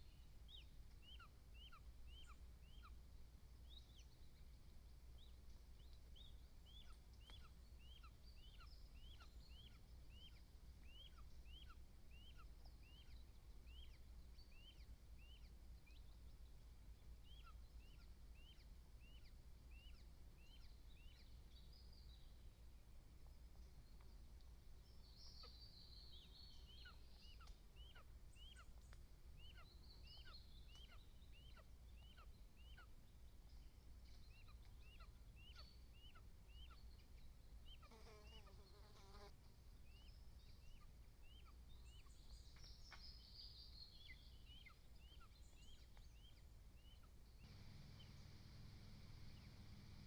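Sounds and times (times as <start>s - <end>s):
birds singing: 0.0s - 2.9s, 3.7s - 22.5s, 23.6s - 50.0s
bird chirping: 0.0s - 3.0s, 3.6s - 22.6s, 23.3s - 50.0s
steady low rumble: 47.5s - 50.0s.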